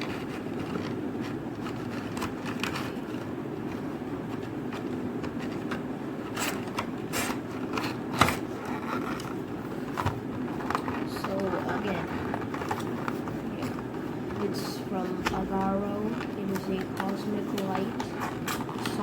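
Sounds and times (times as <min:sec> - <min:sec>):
packaging scrapes and clicks: 0:00.0 - 0:19.0.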